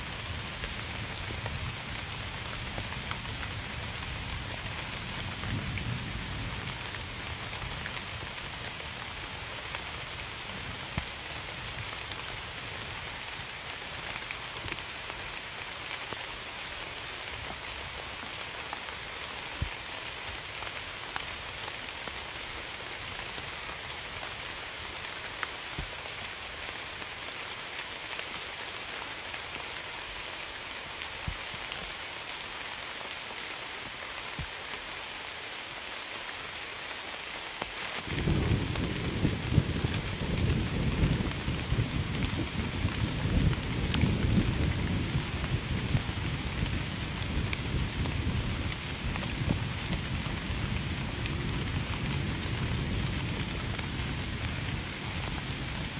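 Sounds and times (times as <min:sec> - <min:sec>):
rain pattering: 0:00.0 - 0:55.9.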